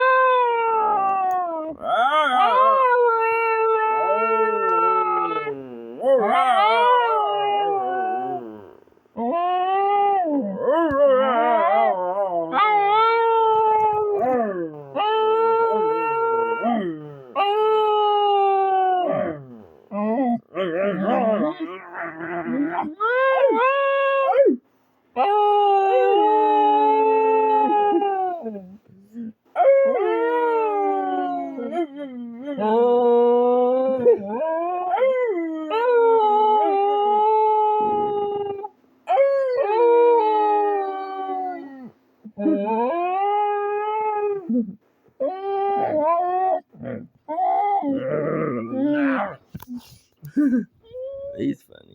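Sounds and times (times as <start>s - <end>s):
dog howling: 0.0s - 24.6s, 25.2s - 28.8s, 29.6s - 49.6s.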